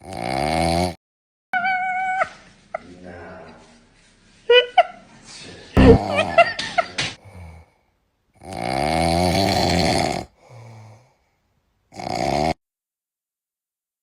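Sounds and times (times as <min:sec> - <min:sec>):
pet snoring: 0:00.0 - 0:01.0, 0:08.4 - 0:11.0, 0:11.9 - 0:12.6.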